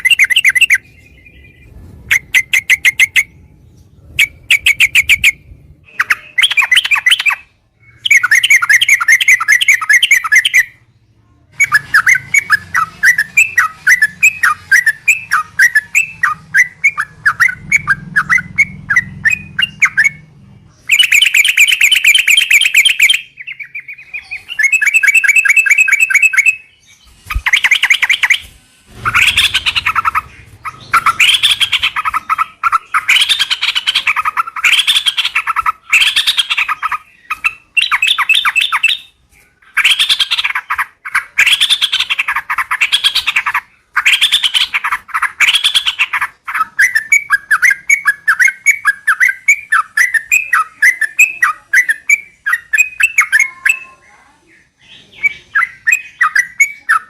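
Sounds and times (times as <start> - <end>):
bulbuls chattering calls: 27.4 - 53.9.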